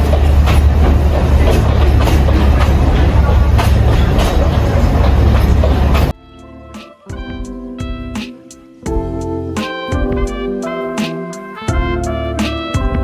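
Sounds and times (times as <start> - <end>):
train rumbling: 0.0 - 6.1
wheels clicking on rails: 0.0 - 6.1
acoustic guitar music: 0.0 - 12.2.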